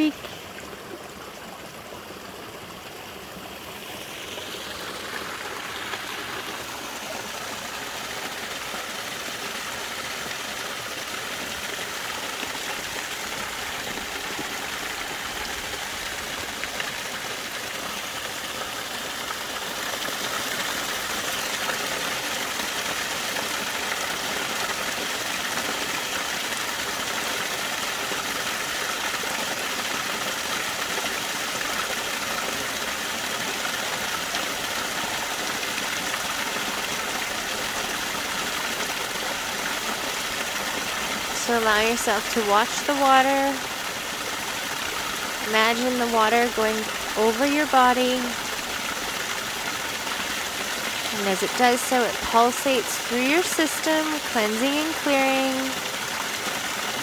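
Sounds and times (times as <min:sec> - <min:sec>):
waterfall rushing: 0:33.8 - 0:57.0.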